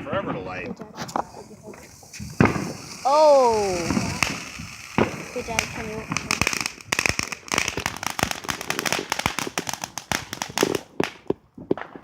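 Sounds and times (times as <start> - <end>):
firework crackling and popping: 0.0 - 12.0.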